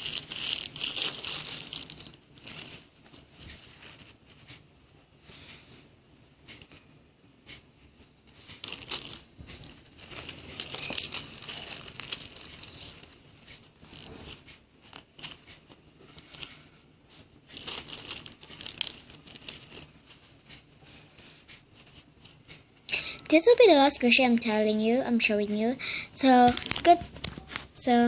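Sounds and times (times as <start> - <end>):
squishy toys crinkling and rustling: 0.0 - 4.1, 8.4 - 13.2, 13.8 - 20.3, 26.2 - 27.7.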